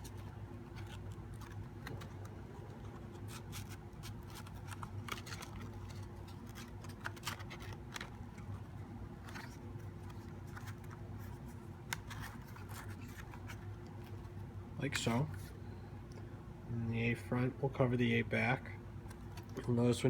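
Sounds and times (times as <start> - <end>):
cardboard scraping and rustling: 0.0 - 14.4
steady low hum: 0.0 - 20.0.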